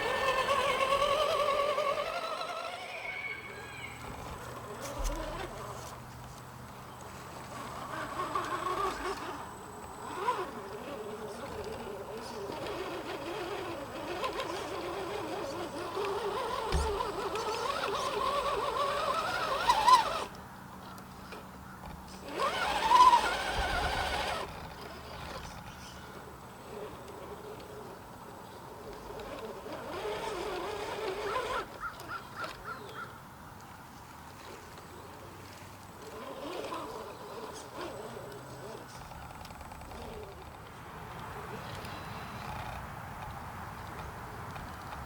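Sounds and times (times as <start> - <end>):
electric motor and gears whining: 0.0 - 33.0, 35.4 - 45.0
low thump: 16.6 - 17.2.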